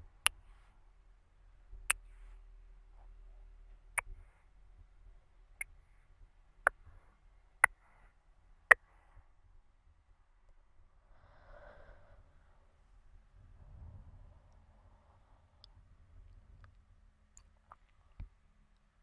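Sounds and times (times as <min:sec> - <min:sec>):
soft breath out: 0:11.0 - 0:12.8.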